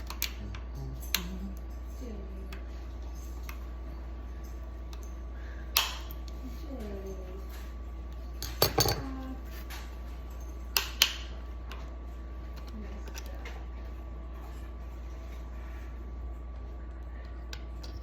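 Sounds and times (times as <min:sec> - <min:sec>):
hard objects clinking: 0:08.4 - 0:09.3.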